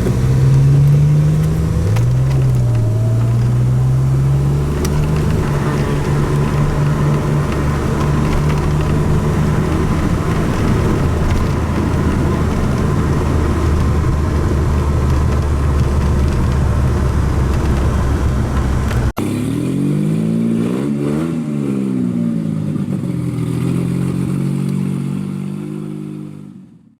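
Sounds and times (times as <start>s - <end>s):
car engine running: 0.0s - 19.7s.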